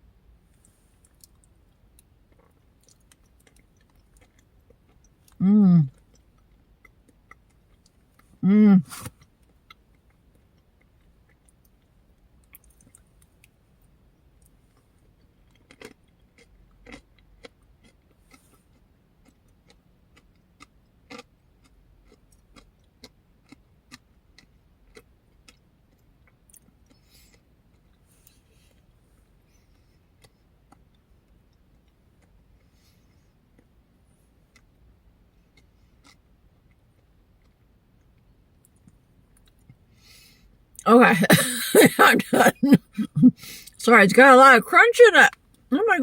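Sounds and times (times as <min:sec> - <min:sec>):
crunchy food chewing: 0:00.5 - 0:13.5, 0:14.4 - 0:28.4.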